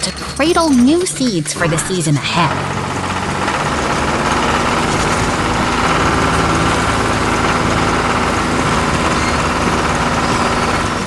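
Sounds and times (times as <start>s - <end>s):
tractor engine running under load: 0.0s - 11.0s.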